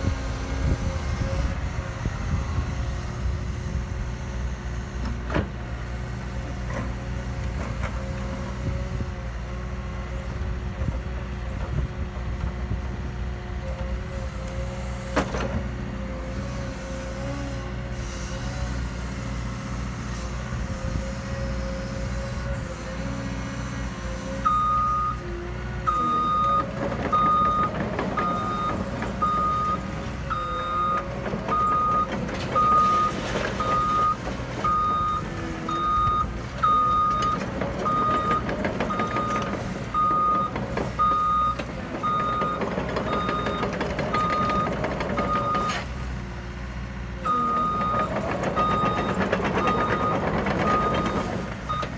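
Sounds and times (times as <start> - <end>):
diesel engine running: 0.0 - 51.9
reversing alarm beeping: 24.5 - 25.2, 25.9 - 45.9, 47.3 - 51.9.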